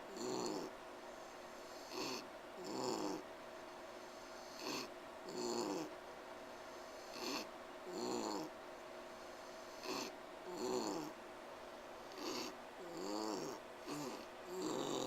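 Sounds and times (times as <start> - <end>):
pig wheezing: 1.6 - 3.2, 4.4 - 5.9, 7.0 - 8.5, 9.4 - 11.1, 12.1 - 15.0.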